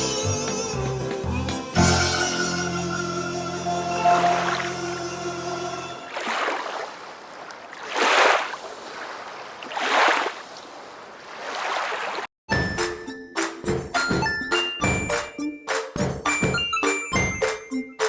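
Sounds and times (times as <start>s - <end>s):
chiming music: 3.8s - 5.3s
water lapping in swells: 4.0s - 5.1s, 6.0s - 12.3s.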